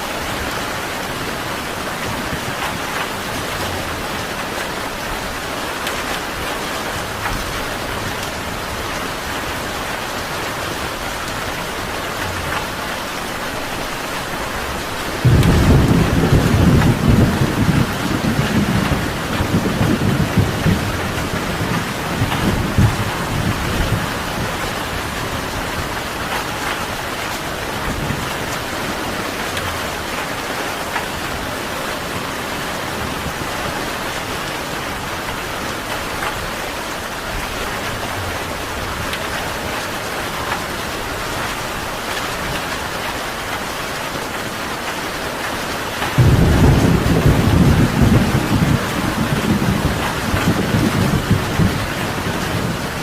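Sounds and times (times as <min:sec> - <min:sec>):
steady rain falling: 0:00.0 - 0:53.0
thunder rumbling: 0:14.7 - 0:30.2, 0:46.1 - 0:53.0.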